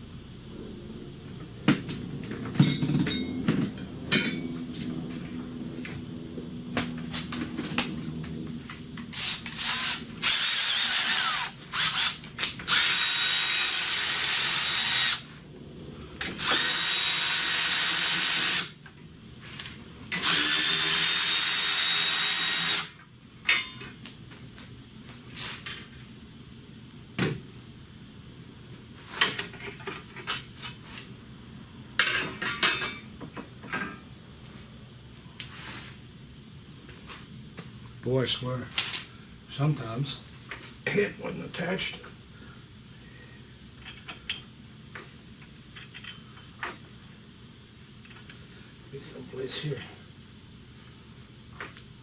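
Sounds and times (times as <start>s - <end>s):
tool clinks: 2.6s - 4.5s
power ratchet whining: 9.0s - 15.3s, 16.2s - 18.8s, 20.1s - 23.0s.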